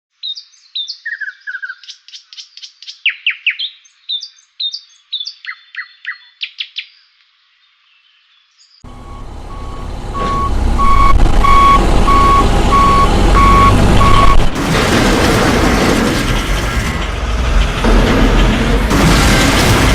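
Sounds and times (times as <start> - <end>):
small birds chirping: 0.1 - 8.8
heavy vehicle engine rumble: 8.8 - 19.9
reversing alarm beeping: 8.9 - 14.5.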